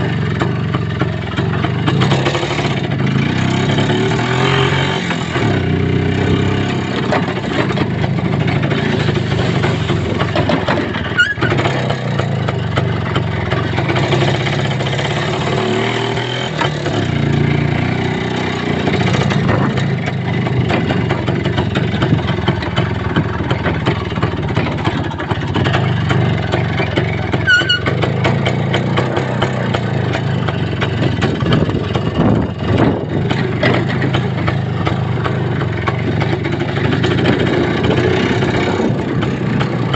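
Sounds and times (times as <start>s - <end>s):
vehicle engine rumbling and rattling: 0.0s - 39.9s
brief high squeaks: 27.4s - 27.9s.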